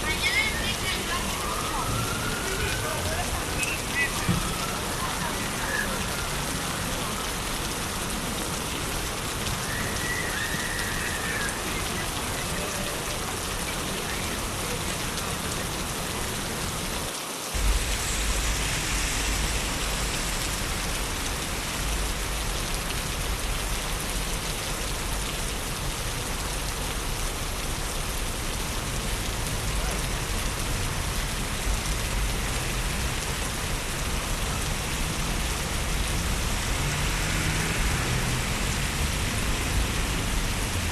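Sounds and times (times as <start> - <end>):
rain on wet pavement: 0.0 - 40.9
deep low rumble: 17.6 - 23.5.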